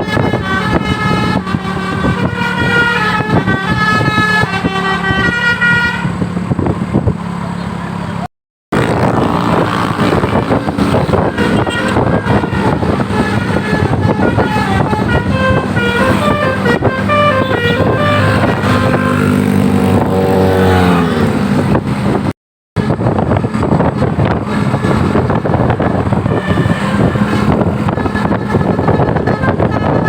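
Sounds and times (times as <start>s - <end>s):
multi-tone musical horn tune: 0.0s - 6.2s, 10.0s - 19.4s, 24.6s - 30.0s
steady rushing noise: 8.8s - 30.0s.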